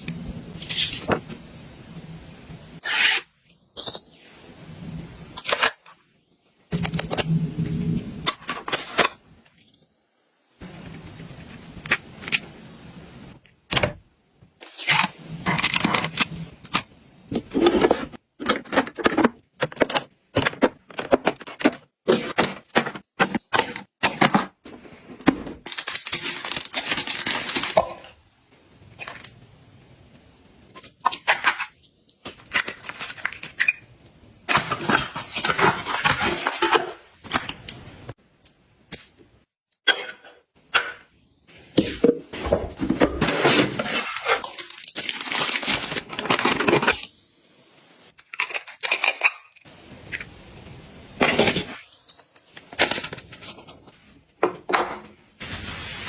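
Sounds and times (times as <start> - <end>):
rustling and scraping: 14.6 - 27.8, 41.5 - 47.0.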